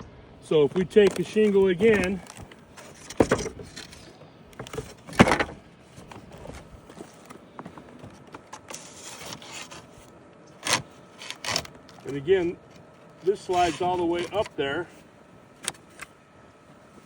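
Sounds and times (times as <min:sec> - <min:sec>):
wooden shingle scraping and clicking: 0:00.6 - 0:14.8, 0:15.6 - 0:17.0.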